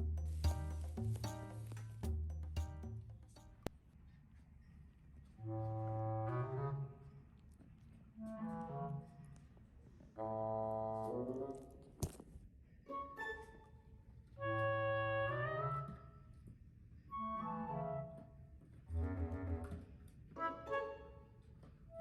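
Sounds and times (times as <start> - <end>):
wind instrument playing: 14.4 - 16.0, 17.2 - 18.2, 18.9 - 19.8, 20.4 - 21.2.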